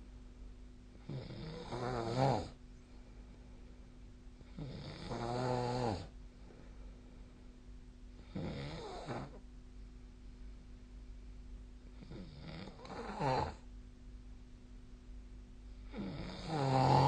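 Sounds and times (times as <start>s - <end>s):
faint steady hum: 0.0s - 17.0s
person snoring: 1.0s - 2.6s, 4.5s - 6.1s, 8.2s - 9.4s, 12.0s - 13.6s, 15.8s - 17.0s.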